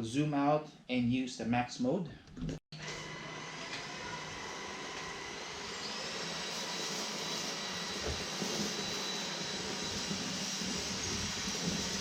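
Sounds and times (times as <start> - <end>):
vacuum cleaner motor whine: 2.8 - 12.0.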